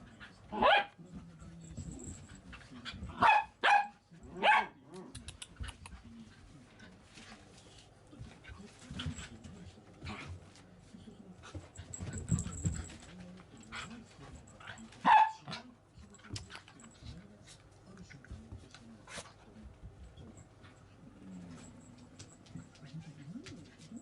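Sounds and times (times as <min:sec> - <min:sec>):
small dog barking: 0:00.6 - 0:01.0, 0:03.2 - 0:04.8, 0:15.0 - 0:15.6.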